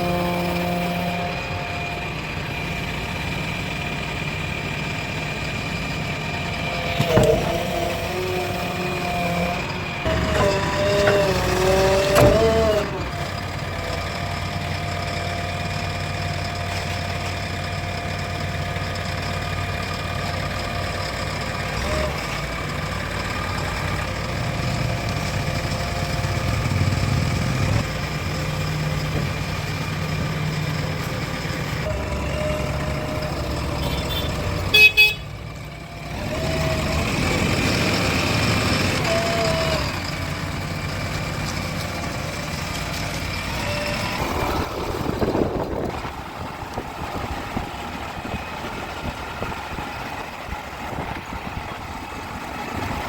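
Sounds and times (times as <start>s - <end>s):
diesel engines running: 0.0s - 53.0s
short loud horn toot: 33.8s - 35.3s.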